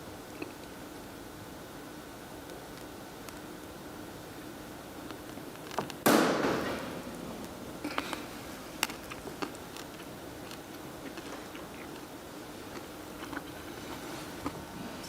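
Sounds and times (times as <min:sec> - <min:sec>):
loud crackling burst: 0:06.0 - 0:09.2.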